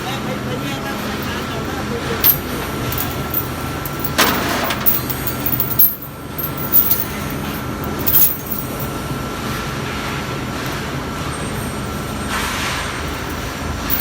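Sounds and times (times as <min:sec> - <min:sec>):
sharp metal clanks: 0:02.2 - 0:08.9.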